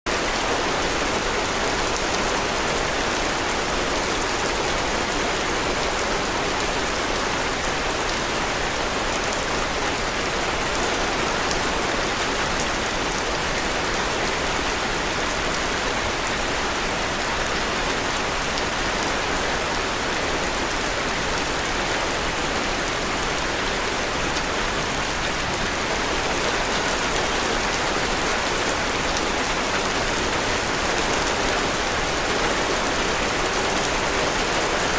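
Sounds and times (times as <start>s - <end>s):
heavy rain falling: 0.1s - 34.9s.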